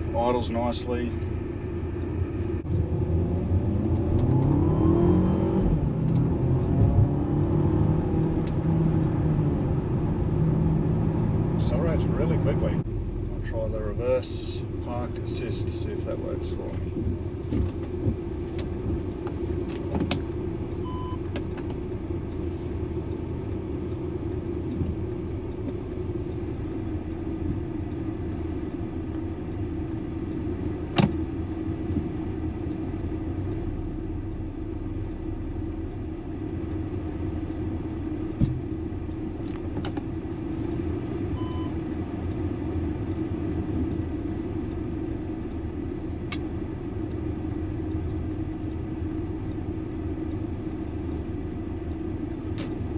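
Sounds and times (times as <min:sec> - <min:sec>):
engine and road rumble in cabin: 0:00.0 - 0:52.9
short electronic beeps: 0:20.8 - 0:21.2, 0:41.4 - 0:41.8.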